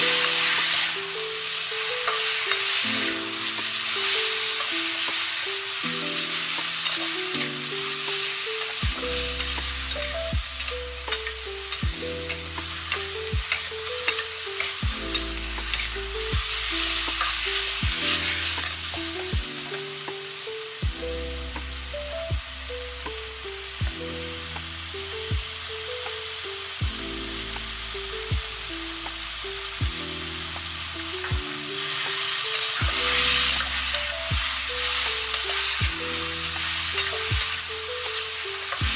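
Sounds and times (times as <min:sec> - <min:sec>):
potatoes sizzling in a wok: 0:00.0 - 0:38.9
spatula clicking and scraping: 0:01.6 - 0:03.0, 0:06.6 - 0:16.0, 0:31.9 - 0:38.9.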